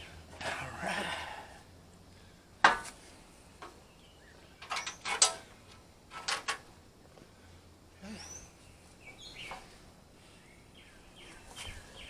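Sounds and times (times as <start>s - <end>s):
metal clanking: 4.6s - 5.5s.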